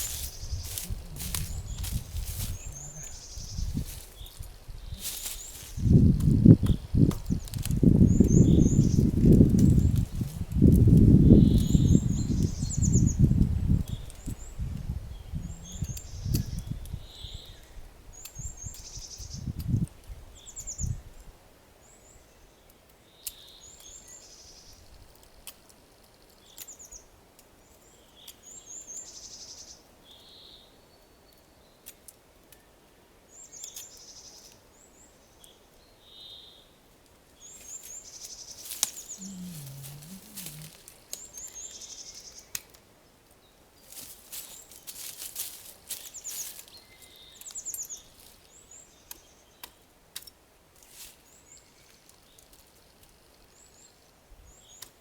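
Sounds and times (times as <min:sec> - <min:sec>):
songbird singing high phrase: 0:00.0 - 0:19.5.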